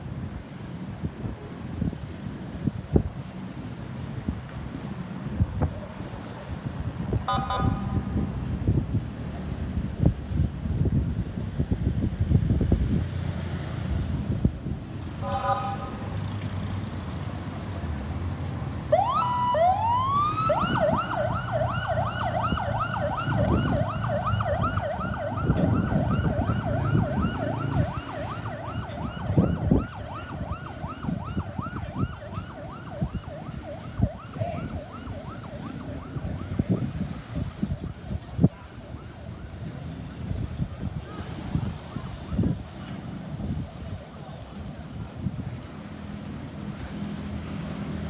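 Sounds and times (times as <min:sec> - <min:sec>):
road traffic rumble: 0:00.0 - 0:48.0
ambulance siren wailing and yelping: 0:18.9 - 0:37.4.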